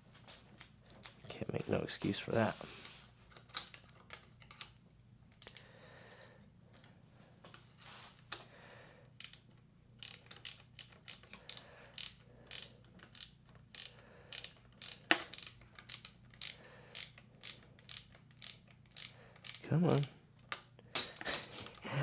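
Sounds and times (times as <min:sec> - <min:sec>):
ratchet wrench clicking: 0:09.2 - 0:09.4, 0:10.0 - 0:20.1.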